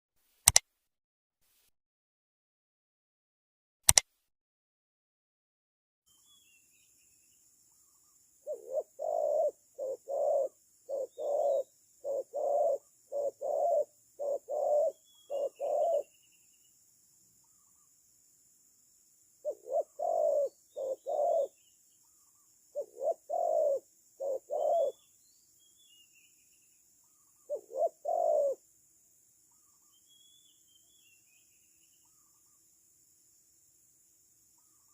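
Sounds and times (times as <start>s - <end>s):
small birds chirping: 6.1s - 34.9s
dove cooing: 8.4s - 16.2s, 19.4s - 25.0s, 27.1s - 28.6s.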